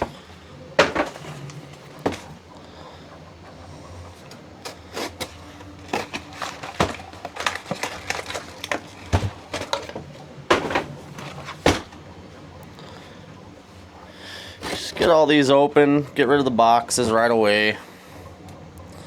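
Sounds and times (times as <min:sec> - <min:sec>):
boxes knocking and clicking: 0:00.0 - 0:02.4, 0:04.2 - 0:12.1
heavy thumps: 0:00.0 - 0:02.4, 0:05.2 - 0:12.1
cardboard rustling: 0:00.0 - 0:02.8, 0:04.0 - 0:13.2, 0:14.5 - 0:15.4.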